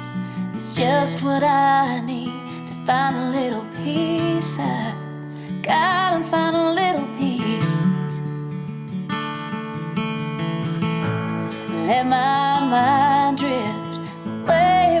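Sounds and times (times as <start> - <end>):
acoustic guitar picking softly: 0.0 - 15.0
wordless voice holding long notes: 14.5 - 15.0.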